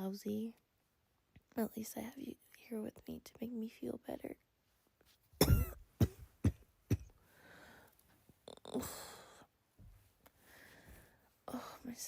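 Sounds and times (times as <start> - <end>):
woman coughing: 5.4 - 7.1.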